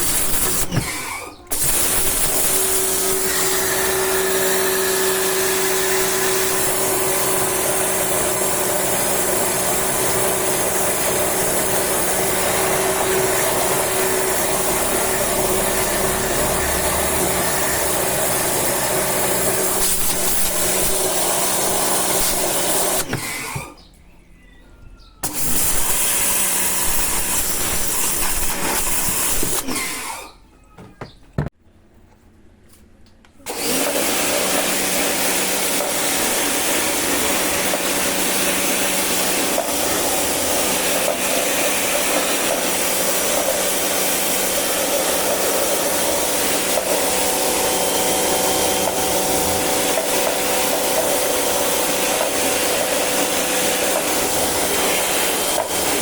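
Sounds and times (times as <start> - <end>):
pressure washer motor and pump: 0.0 - 23.8, 25.2 - 30.4, 33.5 - 56.0.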